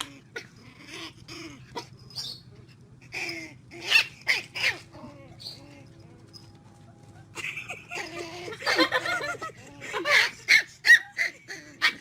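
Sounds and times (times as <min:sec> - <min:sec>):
puppy yipping and whining: 0:00.0 - 0:02.5, 0:03.1 - 0:06.5, 0:10.0 - 0:12.0.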